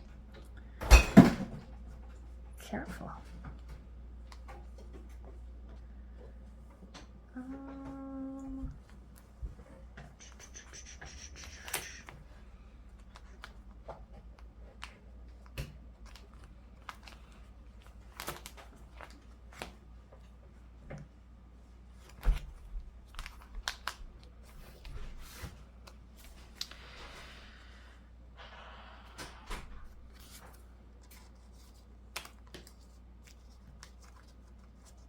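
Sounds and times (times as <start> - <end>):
steady low hum: 0.0 - 18.1
paper rustling and peeling: 30.1 - 35.0.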